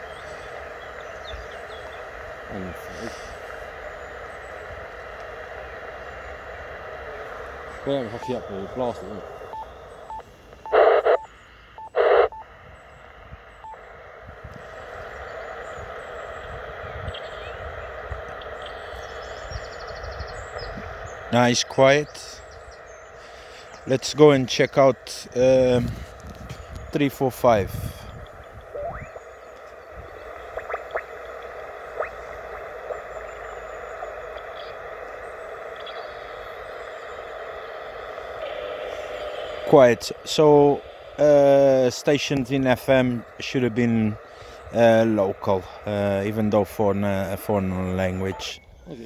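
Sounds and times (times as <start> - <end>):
loud burst of static: 0.0 - 48.6
steady receiver hiss: 0.0 - 48.6
radio key beeps: 7.1 - 12.5, 13.5 - 13.9, 25.3 - 48.8.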